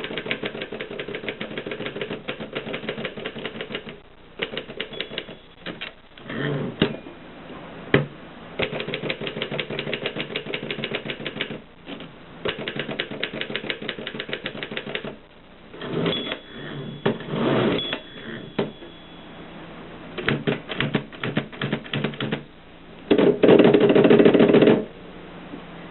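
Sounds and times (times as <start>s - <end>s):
typewriter keystrokes clacking: 0.0s - 6.0s, 8.6s - 15.2s, 20.2s - 22.4s
typewriter carriage sliding with ring: 15.8s - 18.6s.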